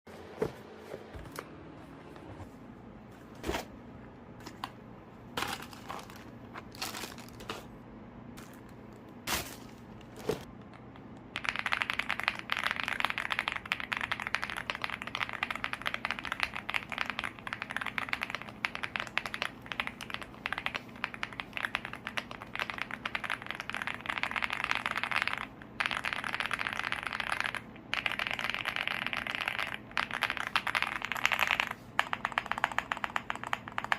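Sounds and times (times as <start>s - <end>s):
mechanical keyboard typing: 11.4s - 33.9s.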